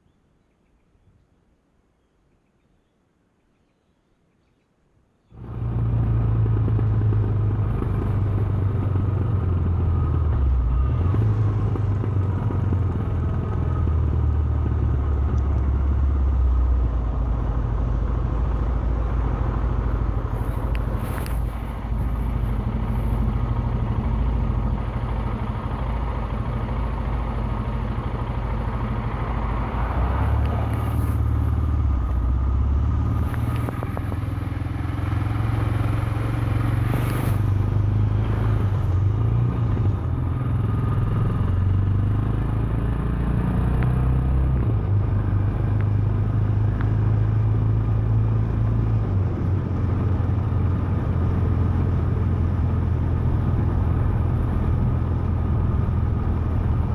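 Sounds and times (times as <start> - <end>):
road noise: 5.2 - 56.9
motorcycle engine running: 5.4 - 56.9
wind noise: 18.5 - 23.4, 29.4 - 32.4, 33.0 - 34.6, 35.7 - 40.0.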